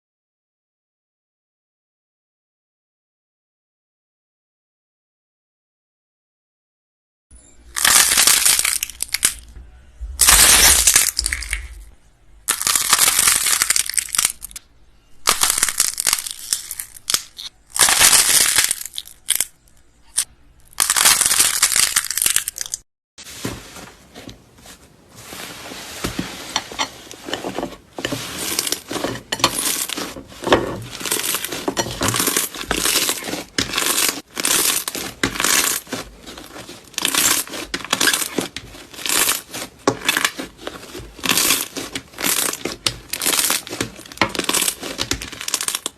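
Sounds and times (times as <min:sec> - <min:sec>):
crunchy slime crackling: 0:07.7 - 0:14.6, 0:15.2 - 0:22.8, 0:27.3 - 0:45.9.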